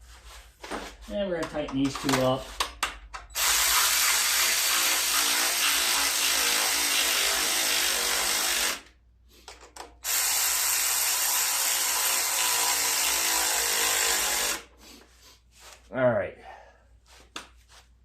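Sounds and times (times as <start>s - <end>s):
power drill running bolts in: 3.3s - 8.9s, 10.0s - 14.7s.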